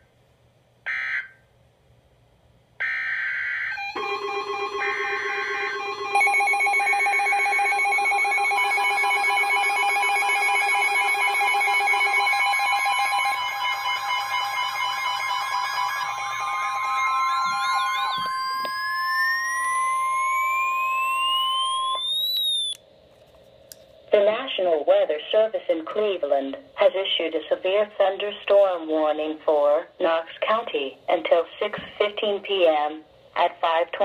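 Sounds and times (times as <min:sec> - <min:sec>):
rising siren-like whine: 0:02.8 - 0:22.8
warbling alarm tones: 0:02.8 - 0:22.8
steady electronic alert tone: 0:03.8 - 0:22.8
screeching data bursts: 0:16.2 - 0:22.8.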